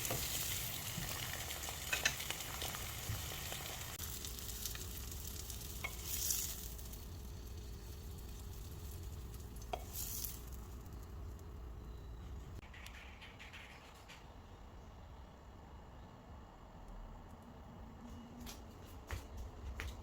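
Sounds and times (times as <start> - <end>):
food sizzling in a frying pan: 0.0 - 11.4.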